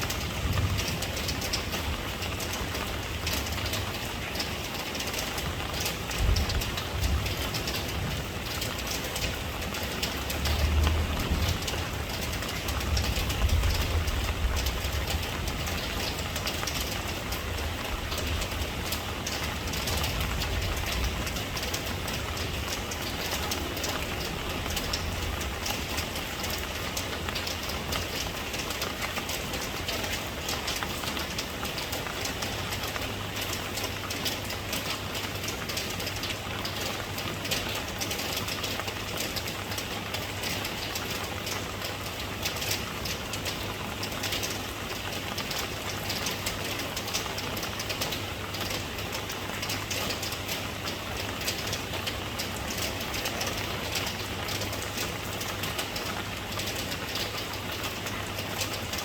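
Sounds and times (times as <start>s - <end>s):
rain hissing and pattering: 0.0s - 59.0s.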